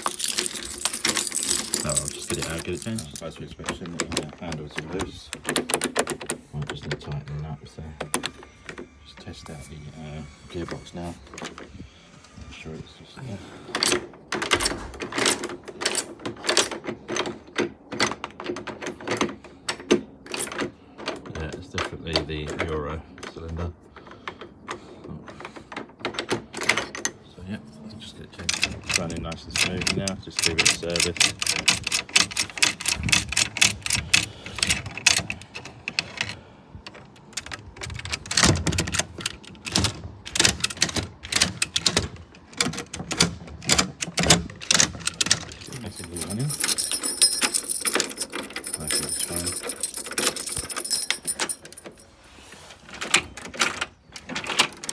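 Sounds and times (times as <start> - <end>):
door lock mechanism clicking: 0.0 - 6.4, 13.8 - 16.8
door lock metallic clicks: 14.4 - 16.6.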